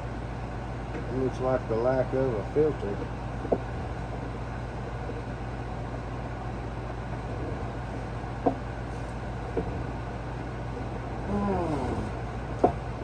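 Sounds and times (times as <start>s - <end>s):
air conditioner humming: 0.0s - 13.0s.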